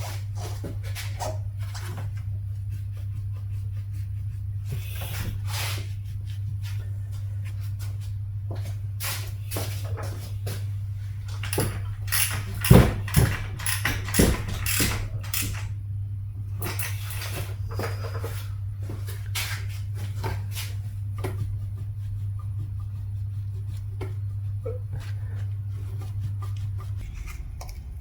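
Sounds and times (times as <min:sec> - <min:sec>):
steady low hum: 0:00.0 - 0:28.0
metal tools clinking and knocking: 0:11.4 - 0:15.7.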